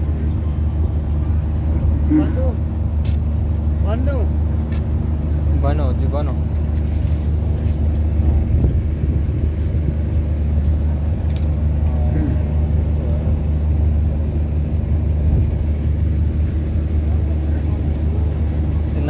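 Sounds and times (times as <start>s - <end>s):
low engine drone: 0.0s - 19.0s
faint voices: 10.7s - 15.2s, 16.2s - 19.0s.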